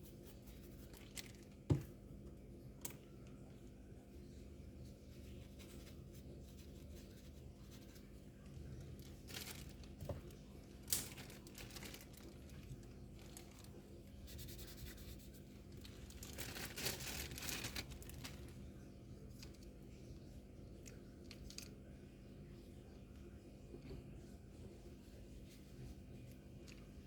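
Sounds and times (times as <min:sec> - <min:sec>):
plastic packaging crinkling: 0:08.8 - 0:18.6.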